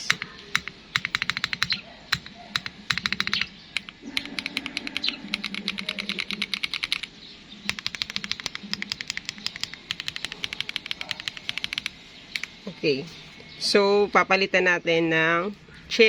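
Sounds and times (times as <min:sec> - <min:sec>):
mechanical keyboard typing: 0:00.0 - 0:07.1, 0:07.7 - 0:12.6.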